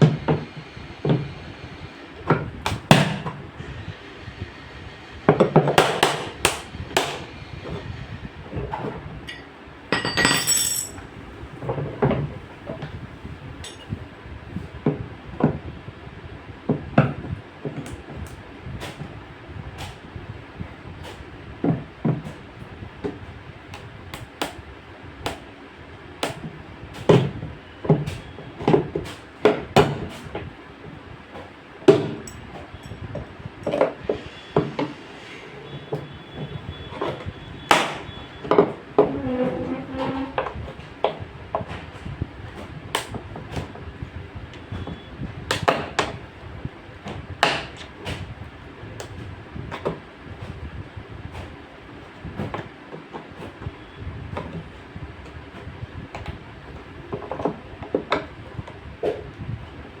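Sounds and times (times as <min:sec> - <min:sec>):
hammer knocking on metal parts: 0:09.3 - 0:11.0.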